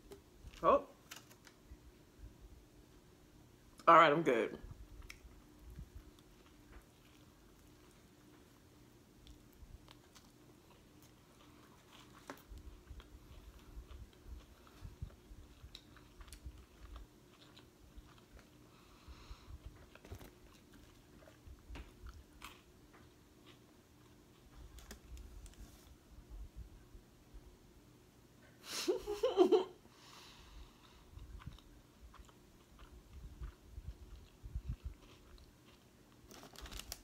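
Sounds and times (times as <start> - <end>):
person chewing food: 4.8 - 25.1, 30.5 - 36.9.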